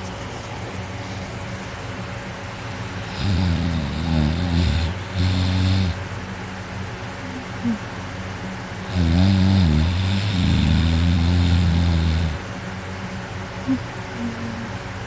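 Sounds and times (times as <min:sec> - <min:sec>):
girl snoring loudly: 0:03.0 - 0:06.0, 0:08.9 - 0:12.4.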